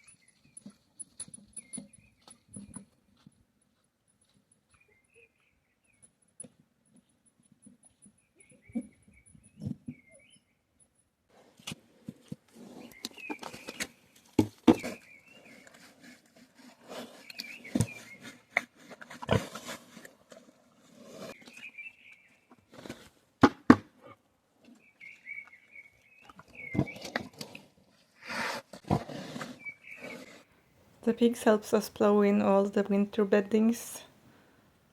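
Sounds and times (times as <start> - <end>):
small birds chirping: 0.0 - 3.3, 4.7 - 6.2, 12.7 - 15.9, 17.2 - 18.6, 21.3 - 22.6, 24.7 - 27.3, 29.4 - 33.7
pigs rooting through straw: 11.3 - 23.2, 24.5 - 30.5
pig snuffles: 15.3 - 20.1.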